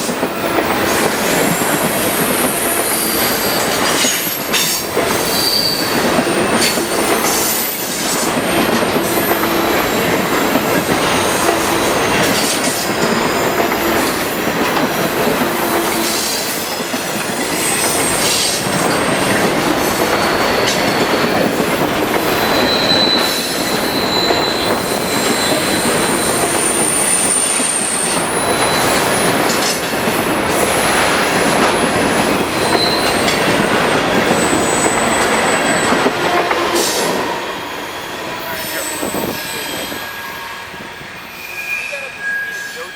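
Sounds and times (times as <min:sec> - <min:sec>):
freight train wheels rumbling: 0:00.0 - 0:42.9
high-pitched wheel squeals: 0:05.1 - 0:08.0, 0:17.6 - 0:21.6, 0:22.2 - 0:29.3, 0:32.5 - 0:33.5, 0:38.5 - 0:42.9.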